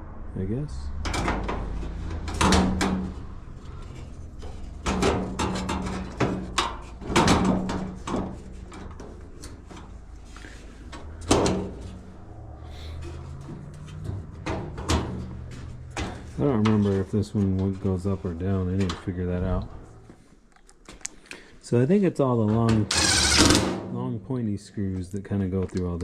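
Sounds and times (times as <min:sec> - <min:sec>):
knocks and clicks of panels: 0:01.0 - 0:03.8, 0:04.4 - 0:10.0, 0:13.4 - 0:17.0.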